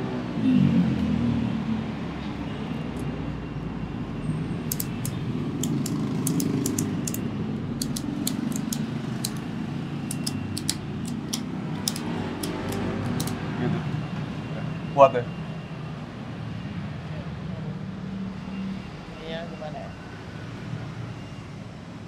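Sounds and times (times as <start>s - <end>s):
low traffic rumble: 0.0s - 22.0s
ratchet strap clicking: 4.7s - 7.2s, 7.8s - 9.5s, 10.1s - 13.4s.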